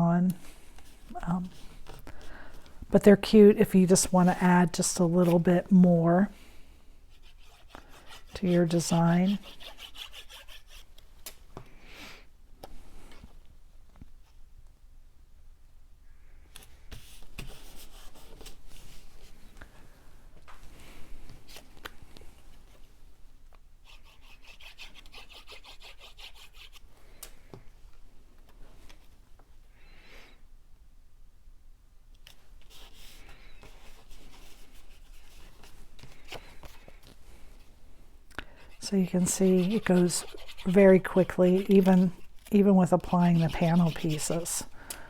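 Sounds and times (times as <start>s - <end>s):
paper rustling and rubbing: 32.6s - 37.6s, 38.6s - 44.7s.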